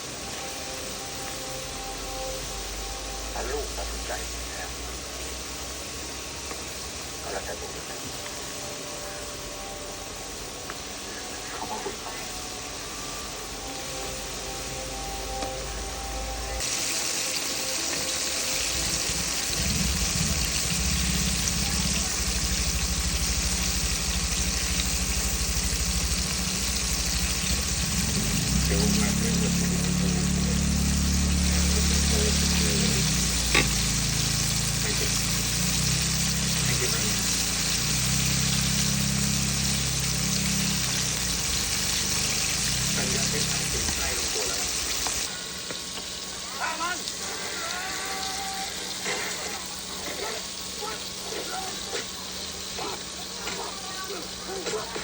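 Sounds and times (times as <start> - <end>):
chicken sizzling in hot oil: 0.0 - 55.0
low pulsing: 18.6 - 44.3
low hum: 18.6 - 45.2.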